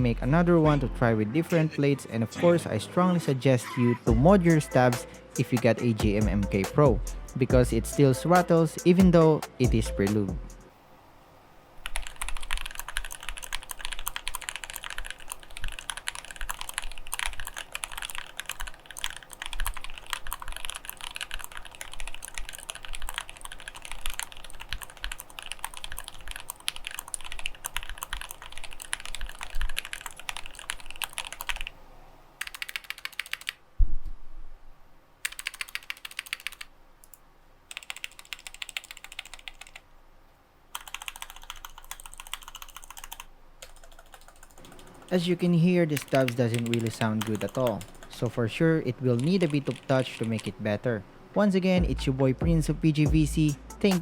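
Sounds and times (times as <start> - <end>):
mechanical keyboard typing: 11.8 - 31.7, 32.4 - 33.6, 35.2 - 36.7, 37.7 - 39.8, 40.8 - 48.4, 49.1 - 50.6
rapid presses on long keys: 11.8 - 31.7, 32.4 - 33.6, 35.2 - 36.7, 37.7 - 39.8, 40.8 - 48.4, 49.0 - 50.6.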